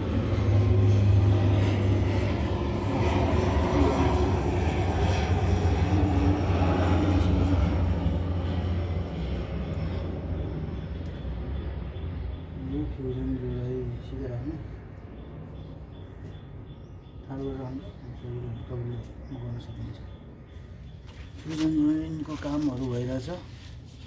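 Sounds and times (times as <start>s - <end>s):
low engine-like drone: 0.0s - 24.0s.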